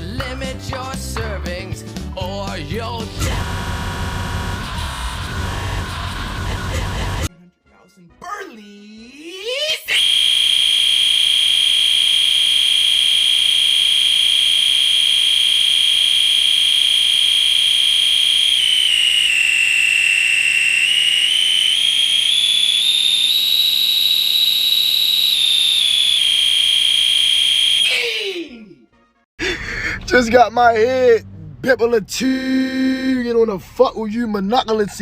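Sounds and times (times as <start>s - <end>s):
shrill high-pitched tone: 9.9s - 28.6s.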